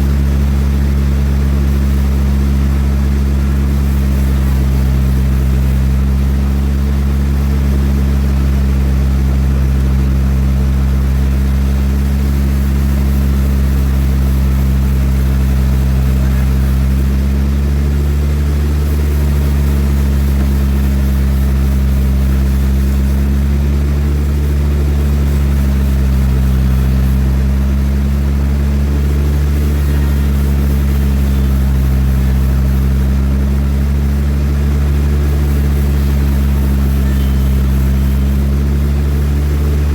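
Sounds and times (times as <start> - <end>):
sawmill engine drone: 0.0 - 39.9.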